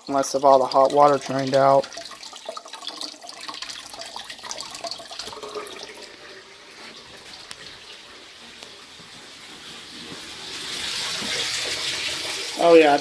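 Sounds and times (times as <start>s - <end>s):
water running from a faucet: 0.0s - 13.0s.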